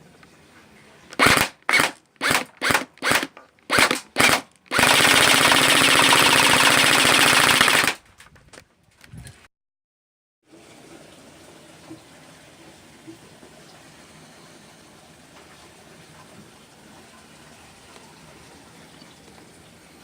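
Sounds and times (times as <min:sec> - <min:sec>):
airsoft gun automatic bursts: 0:01.2 - 0:08.0.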